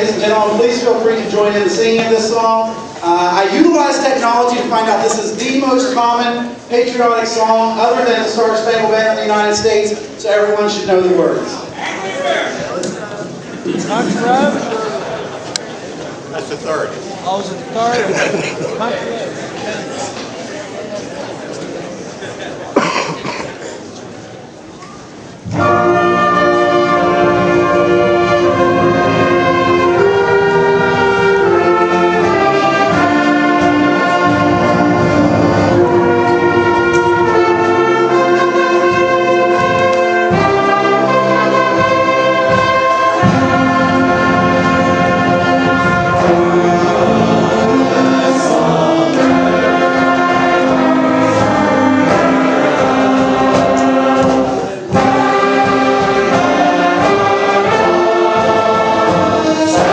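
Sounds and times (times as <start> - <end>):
brass concert band playing: 0.0 - 15.4, 25.1 - 59.9
choir singing: 25.4 - 59.9.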